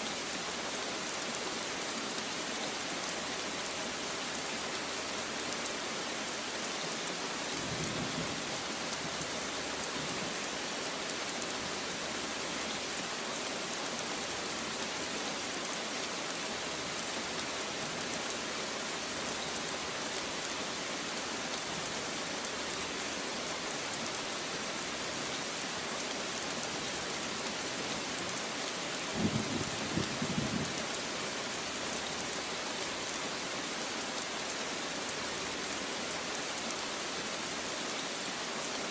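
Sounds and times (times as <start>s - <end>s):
steady rain falling: 0.0s - 38.9s
low rumble of thunder: 29.1s - 30.8s.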